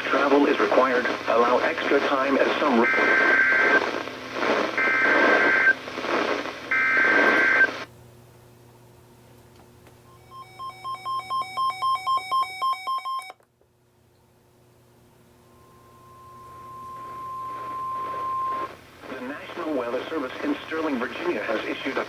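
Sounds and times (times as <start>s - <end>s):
radio static: 0.0s - 7.9s, 16.5s - 22.0s
steady warning alarm tone: 15.5s - 18.7s.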